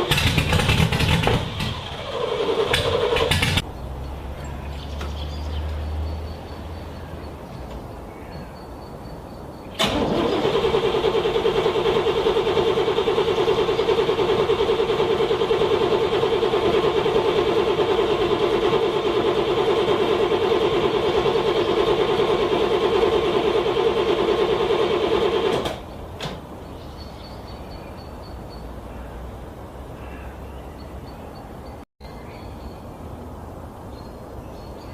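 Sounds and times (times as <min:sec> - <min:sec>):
car engine cranking: 0:00.0 - 0:03.7, 0:09.7 - 0:25.9.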